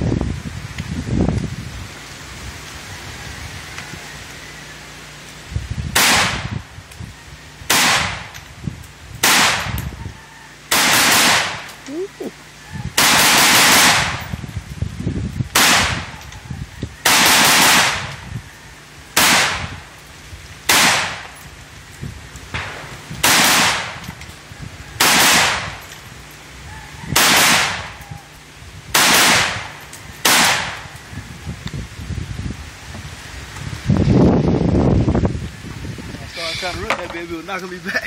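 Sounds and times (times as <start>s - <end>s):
rifle gunshots: 6.0s - 6.5s, 7.7s - 8.3s, 9.2s - 9.8s, 10.7s - 11.6s, 13.0s - 14.3s, 15.6s - 16.1s, 17.0s - 18.1s, 19.2s - 19.7s, 20.7s - 21.3s, 22.5s - 24.1s, 25.0s - 25.8s, 27.2s - 27.9s, 28.9s - 30.8s.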